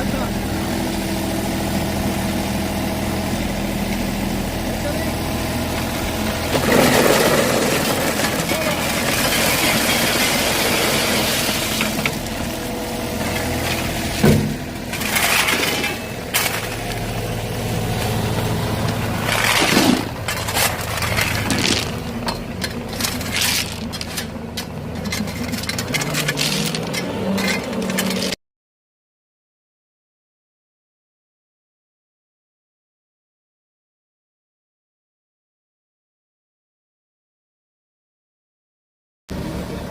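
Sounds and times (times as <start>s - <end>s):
machine engine running: 0.0s - 28.4s
loud crunching and clattering: 6.3s - 28.4s.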